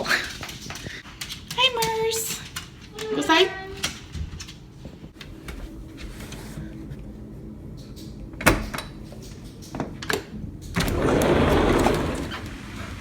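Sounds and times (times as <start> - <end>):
door opening clicks and knocks: 7.8 - 12.3.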